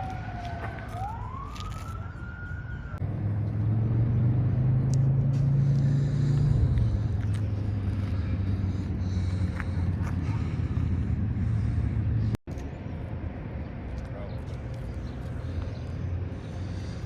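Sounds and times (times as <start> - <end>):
siren wailing: 0.0 - 3.0
car engine rumbling: 3.0 - 17.0.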